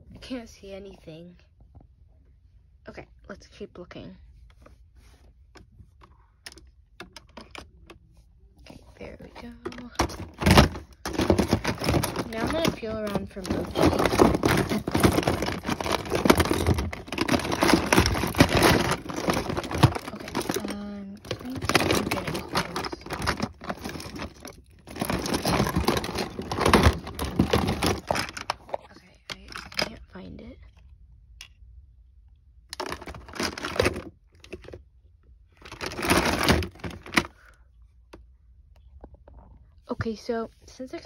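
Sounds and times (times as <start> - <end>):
plastic toys clicking and knocking: 5.6 - 8.0, 9.4 - 30.1, 32.7 - 34.8, 35.6 - 37.5
packaging rustling: 9.4 - 29.9, 32.7 - 34.8, 35.6 - 37.4.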